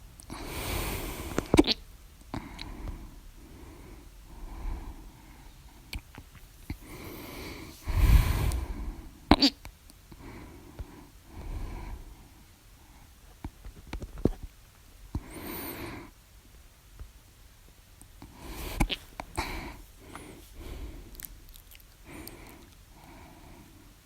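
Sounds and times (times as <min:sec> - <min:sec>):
breathing: 0:00.3 - 0:01.6, 0:02.4 - 0:05.8, 0:06.8 - 0:09.2, 0:10.1 - 0:13.1, 0:15.2 - 0:16.1, 0:18.3 - 0:21.3, 0:22.0 - 0:24.0.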